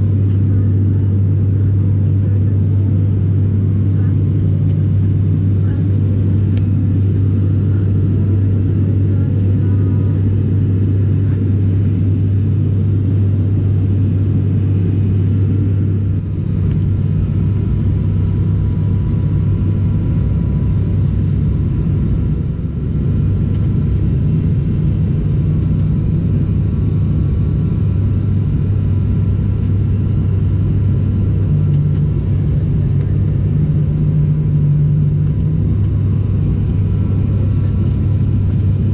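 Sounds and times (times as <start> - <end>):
airliner engines droning in cabin: 0.0 - 38.9.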